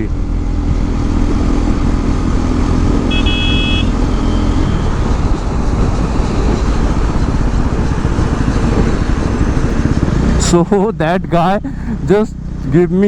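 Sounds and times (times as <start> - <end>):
motorcycle engine running: 0.0 - 11.3
wind and road noise: 0.0 - 13.0
short high horn beep: 3.1 - 5.0.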